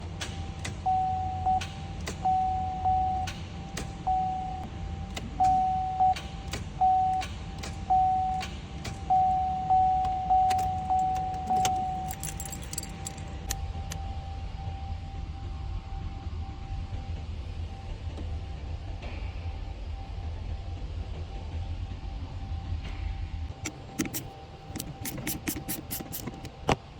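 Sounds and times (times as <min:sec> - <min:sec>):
short electronic beeps: 0:09.1 - 0:12.2
light metallic jingle: 0:10.6 - 0:13.4.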